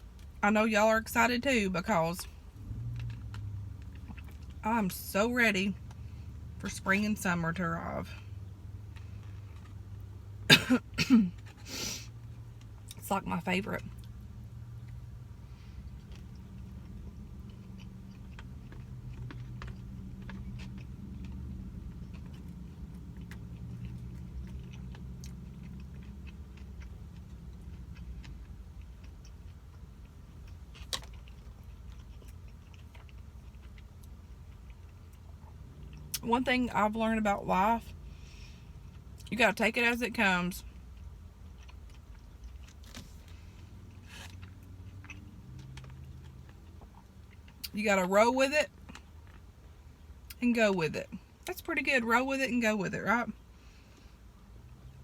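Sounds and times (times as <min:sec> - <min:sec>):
eating and handling food: 0:00.0 - 0:55.0
steady low hum: 0:00.0 - 0:55.0
person chewing: 0:02.2 - 0:04.6, 0:08.2 - 0:13.0, 0:13.8 - 0:36.2, 0:40.6 - 0:47.8, 0:48.7 - 0:49.6.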